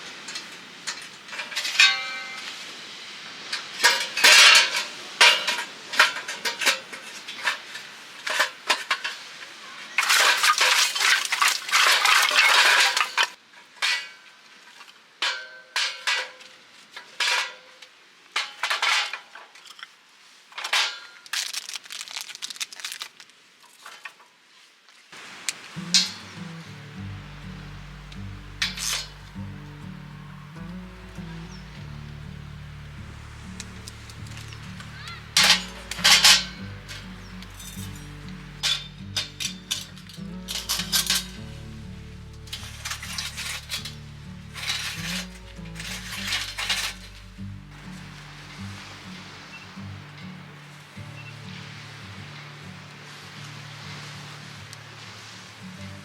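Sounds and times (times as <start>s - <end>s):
metal cookware clinking and scraping: 1.6s - 2.5s, 25.8s - 26.3s, 28.0s - 31.8s, 33.6s - 41.7s, 42.4s - 47.4s
steady hiss: 25.1s - 56.0s
soft background music: 25.8s - 56.0s.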